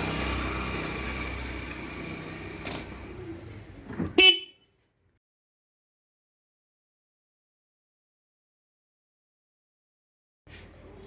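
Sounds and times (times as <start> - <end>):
motorcycle horn beep: 4.1 - 4.6.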